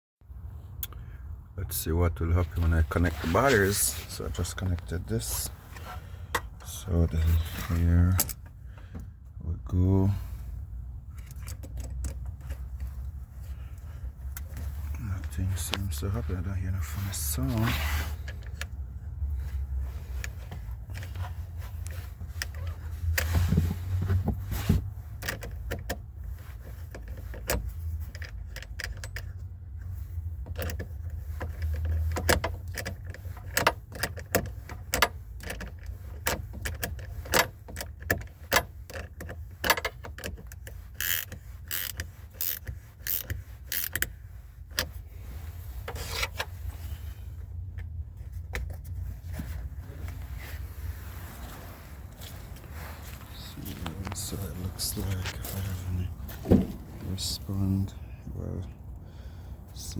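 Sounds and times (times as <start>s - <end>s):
steady low rumble: 0.3s - 24.4s, 46.5s - 59.9s
clicks and knocks of handling: 30.4s - 44.1s.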